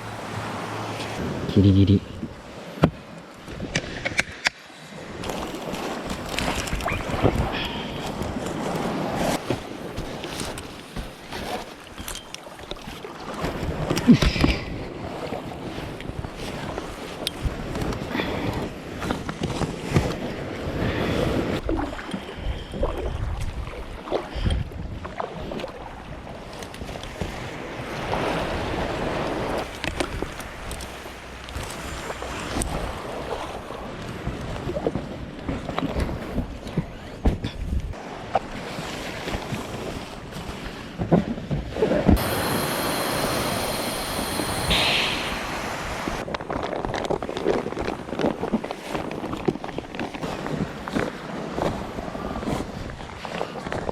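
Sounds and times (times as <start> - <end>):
sea waves washing: 0.0 - 24.5, 25.2 - 35.3, 41.7 - 53.9
wind buffeting microphone: 5.1 - 11.2, 38.6 - 53.9
steady rush with high whine: 42.2 - 46.2.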